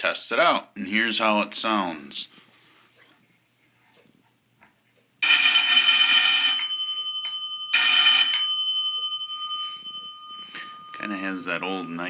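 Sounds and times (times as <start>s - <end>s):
electric doorbell ringing: 5.2s - 12.0s.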